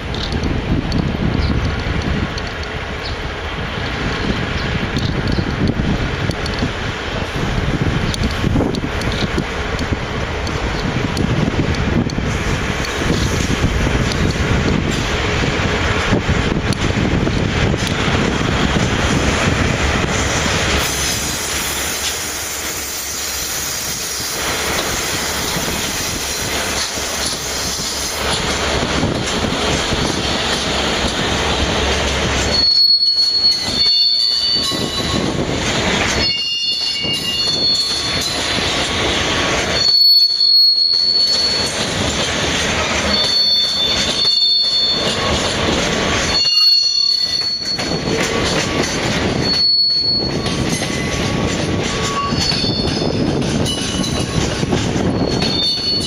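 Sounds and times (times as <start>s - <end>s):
freight train rumbling past: 0.0s - 56.0s
train wheels squealing: 20.6s - 28.6s, 30.0s - 56.0s.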